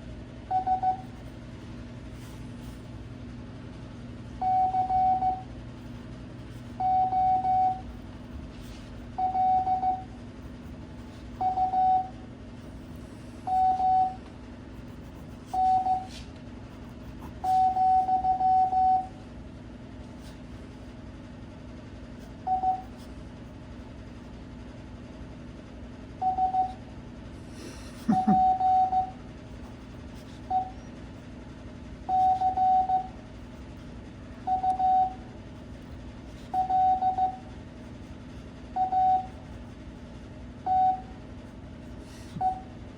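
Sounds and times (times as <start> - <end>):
faint steady hum: 0.0 - 42.9
morse code beeps: 0.5 - 1.2, 4.4 - 5.5, 6.8 - 7.9, 9.2 - 10.1, 11.4 - 12.2, 13.5 - 14.2, 15.5 - 16.1, 17.4 - 19.2, 22.5 - 22.9, 26.2 - 26.8, 28.1 - 29.2, 30.5 - 30.9, 32.1 - 33.2, 34.5 - 35.2, 36.5 - 37.5, 38.8 - 39.4, 40.7 - 41.1.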